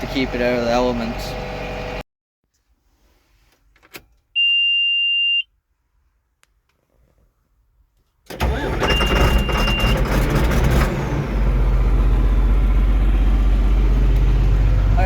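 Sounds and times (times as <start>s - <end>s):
high steady beep: 4.4s - 5.5s
tractor engine starting and idling: 8.2s - 15.0s.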